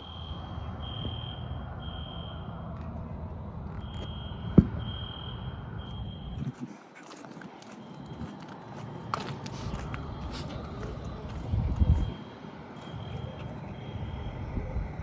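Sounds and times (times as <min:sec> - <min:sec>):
fire alarm beeps: 0:00.0 - 0:02.7, 0:03.7 - 0:06.6, 0:07.7 - 0:08.5, 0:09.8 - 0:14.6.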